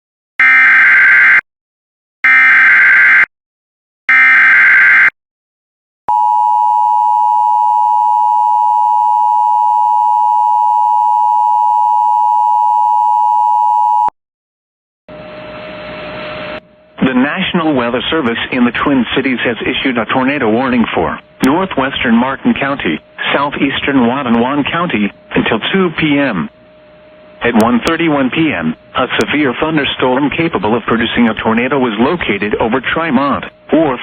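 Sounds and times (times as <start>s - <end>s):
steady attention tone: 6.1s - 14.1s, 15.1s - 34.0s.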